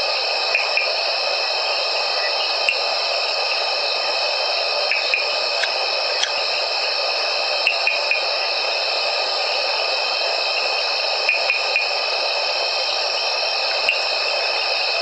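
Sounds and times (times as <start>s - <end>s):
chorus of calling insects: 4.8s - 6.6s, 7.6s - 8.6s.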